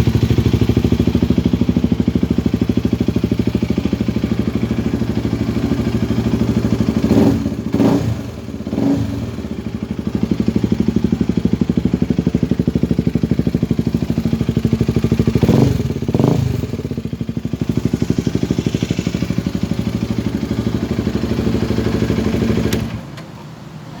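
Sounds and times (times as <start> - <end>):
motorcycle engine idling and revving: 0.0 - 24.0
engine shut-off click: 22.6 - 23.4.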